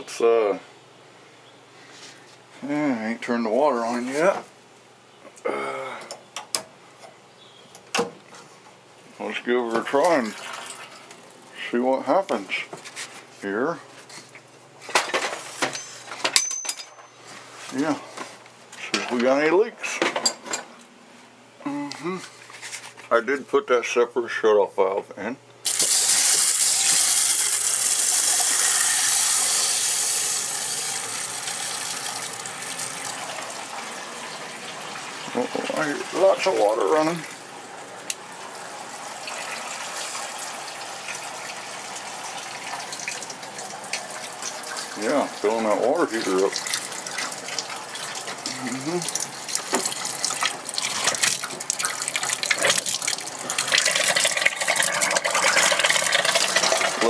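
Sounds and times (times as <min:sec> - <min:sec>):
water rushing through pipes: 0:25.7 - 0:57.0.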